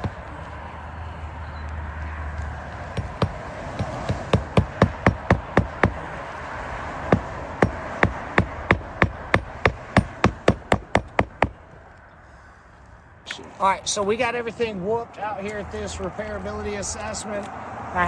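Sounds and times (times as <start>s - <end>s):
hammer driving nails into shingles: 2.9s - 6.2s, 7.0s - 11.6s.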